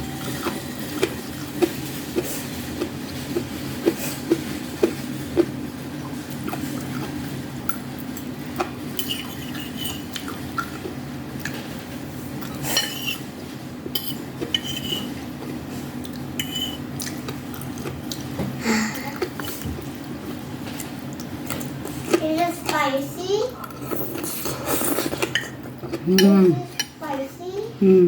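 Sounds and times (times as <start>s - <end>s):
cutlery clinking on dishes: 9.0s - 10.2s, 12.5s - 13.2s, 13.9s - 15.1s, 16.4s - 16.8s.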